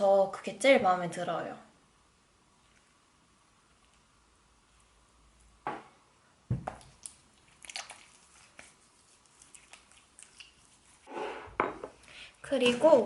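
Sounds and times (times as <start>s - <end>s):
rustling: 6.6s - 11.4s.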